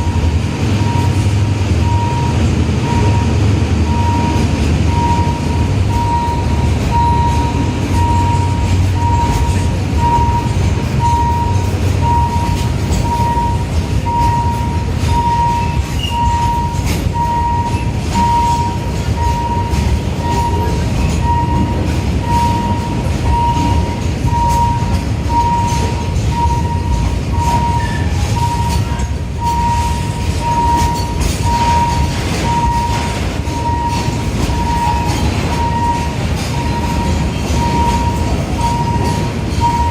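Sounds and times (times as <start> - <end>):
level crossing warning beep: 0.0 - 39.9
train wheels rumbling: 0.0 - 39.9.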